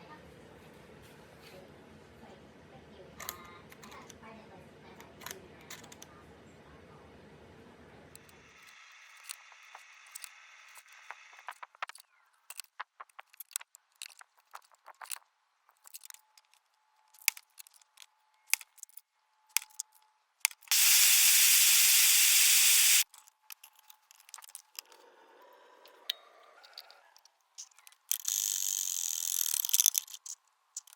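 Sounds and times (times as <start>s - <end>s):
small clicks and taps on metal: 11.0s - 20.8s, 27.6s - 30.9s
loud steady hiss: 20.7s - 23.0s.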